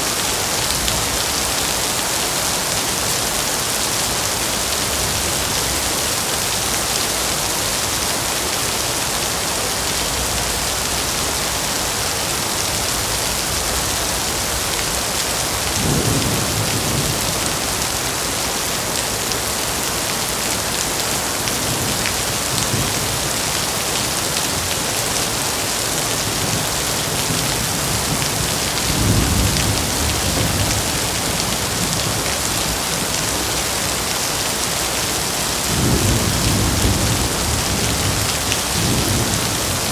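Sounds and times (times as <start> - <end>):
heavy rain falling: 0.0 - 39.9
thunder rumbling: 26.2 - 32.8.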